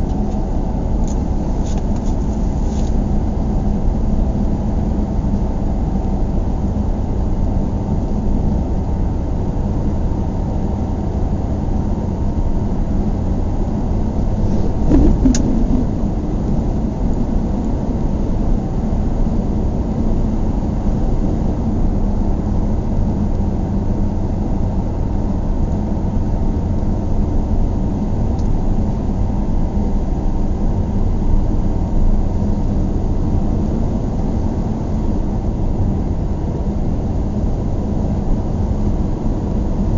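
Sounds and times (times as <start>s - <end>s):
car engine and road rumble: 0.0s - 39.9s
short knock: 14.6s - 15.9s.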